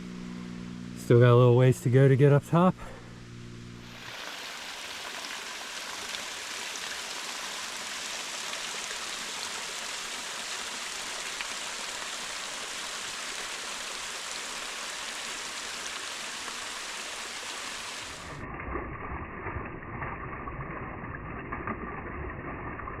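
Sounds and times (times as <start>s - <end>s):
stream water rushing over rocks: 3.8s - 18.5s.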